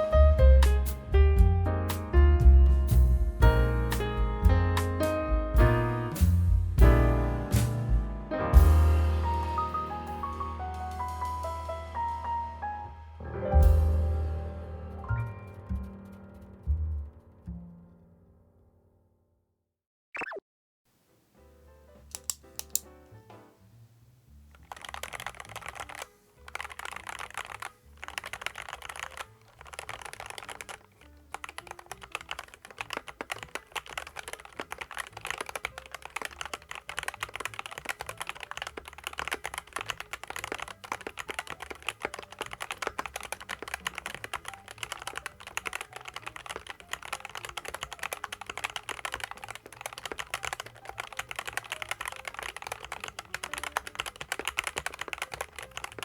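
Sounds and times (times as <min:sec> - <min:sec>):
fast typing on mechanical keyboard: 0:24.6 - 0:56.0.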